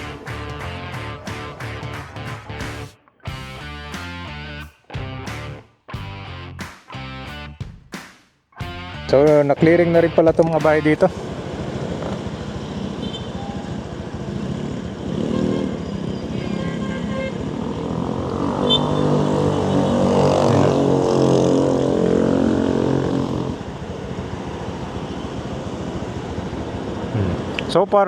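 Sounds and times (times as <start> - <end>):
street traffic: 0.0 - 7.5, 8.6 - 28.0
vehicle engine passing close: 10.6 - 27.8.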